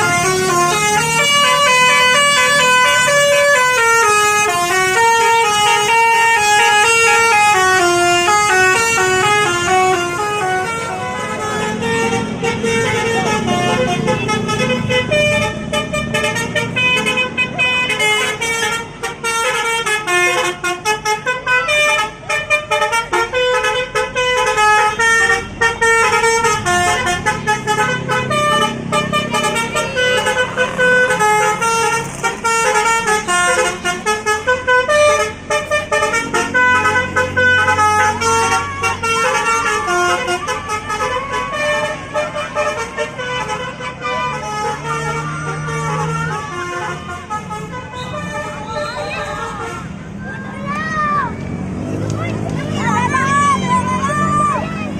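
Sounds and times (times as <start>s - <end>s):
musical air horn playing a tune: 0.0s - 50.0s
low rumble of bus: 0.0s - 54.9s.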